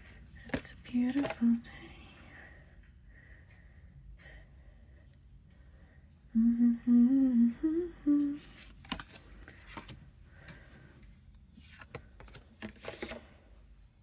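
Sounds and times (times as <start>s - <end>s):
woman humming: 6.3s - 8.6s.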